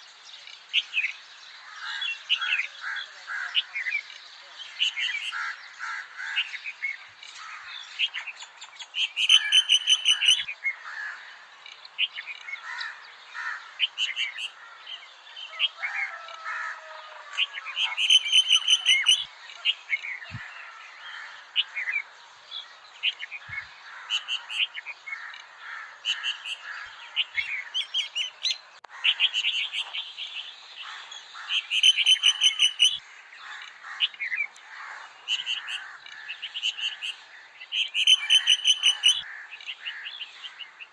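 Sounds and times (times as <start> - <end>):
birds chirping and singing: 0.0 - 40.9
loud rapid bird trill: 8.9 - 11.2, 17.7 - 19.3, 29.0 - 40.9.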